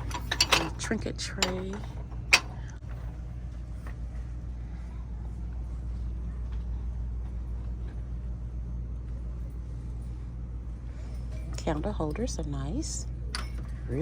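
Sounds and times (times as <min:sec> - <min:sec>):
store background rumble: 0:00.0 - 0:14.0.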